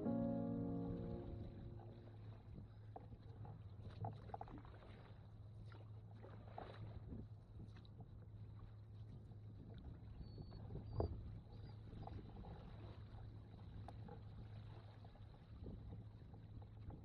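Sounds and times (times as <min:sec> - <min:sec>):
paddle dips and drips: 0:03.9 - 0:07.0
paddle splash: 0:03.9 - 0:07.0.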